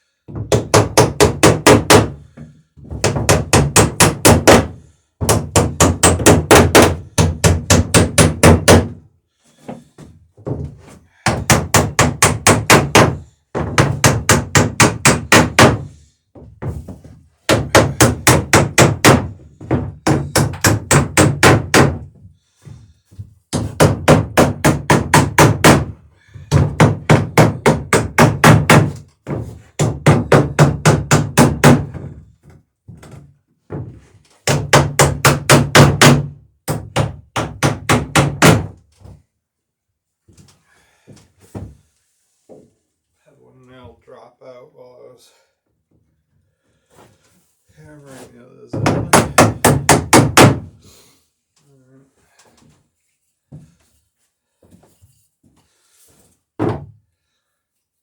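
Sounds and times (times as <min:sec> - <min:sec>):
hammer striking nails into wood: 0:00.3 - 0:09.0, 0:11.2 - 0:16.0, 0:16.6 - 0:22.2, 0:23.5 - 0:32.2, 0:34.4 - 0:38.8, 0:48.7 - 0:50.7.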